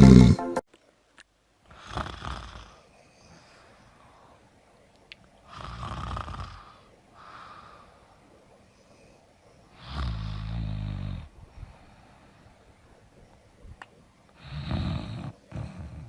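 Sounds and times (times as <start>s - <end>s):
woman snoring: 0.0s - 0.4s, 1.7s - 3.4s, 5.5s - 7.8s, 9.8s - 11.3s, 14.4s - 16.0s.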